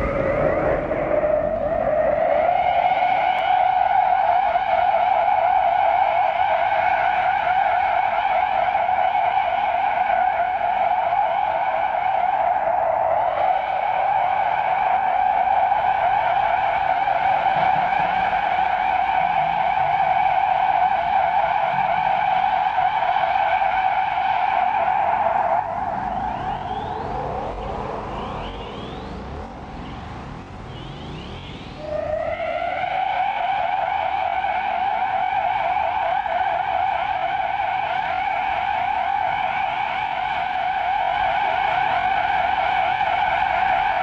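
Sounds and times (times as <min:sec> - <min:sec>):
warbling electronic tone: 0:24.6 - 0:29.2.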